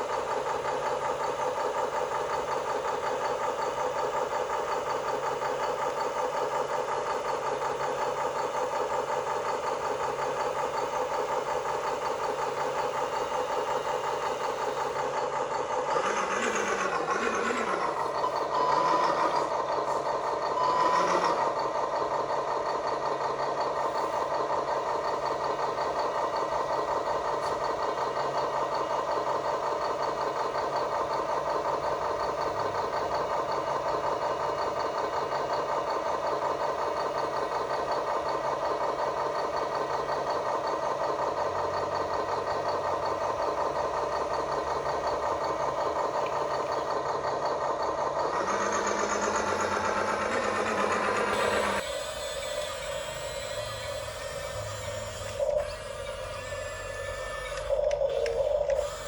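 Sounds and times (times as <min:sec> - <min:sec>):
toy machine motor drone: 0:15.9 - 0:19.5, 0:20.6 - 0:21.5, 0:48.3 - 0:59.0.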